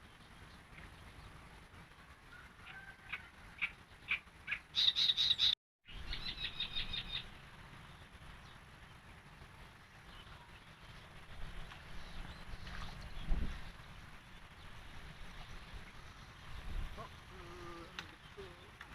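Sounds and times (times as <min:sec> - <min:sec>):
low steady rumble: 0:00.0 - 0:04.8, 0:05.9 - 0:18.9
bird chirping and trilling: 0:03.1 - 0:07.3.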